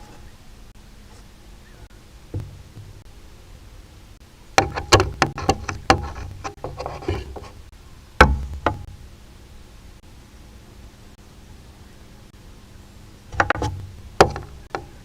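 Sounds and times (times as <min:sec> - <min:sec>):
beak knocking and scraping: 0:04.6 - 0:08.9, 0:13.3 - 0:15.0.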